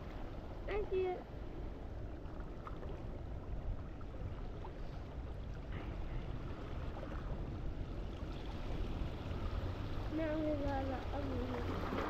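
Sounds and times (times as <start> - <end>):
wind rumble on microphone: 0.0 - 12.0
sea washing on rocky shore: 8.6 - 12.0.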